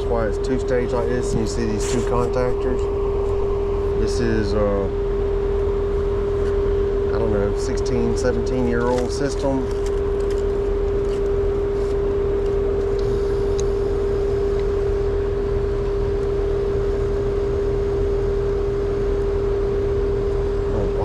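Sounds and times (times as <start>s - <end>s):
air conditioner compressor hum: 0.0s - 21.0s
condenser fan rushing: 0.0s - 21.0s.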